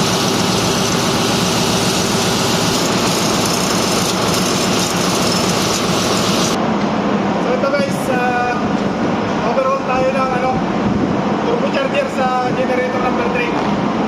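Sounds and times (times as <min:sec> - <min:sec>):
turbocharger hiss: 0:00.0 - 0:06.6
diesel generator drone: 0:00.0 - 0:07.4.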